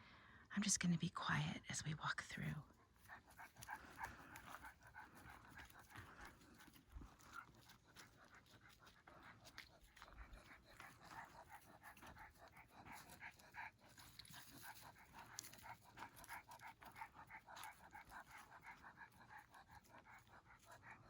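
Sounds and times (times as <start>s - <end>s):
rapid rhythmic panting: 2.3s - 21.0s.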